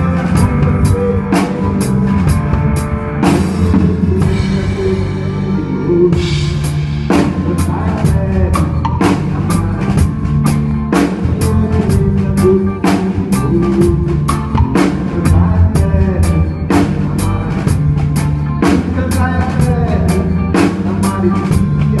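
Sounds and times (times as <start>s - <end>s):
electric bass notes: 0.0s - 22.0s
drum kit kick and snare hits: 12.9s - 19.0s.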